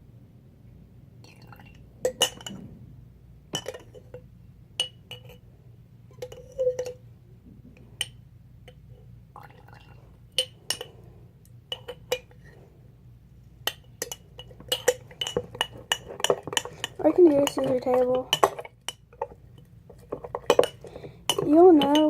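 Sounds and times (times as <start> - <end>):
spoon clinking against glass: 13.7 - 19.0, 20.1 - 22.0
stirring thick slime: 14.0 - 22.0.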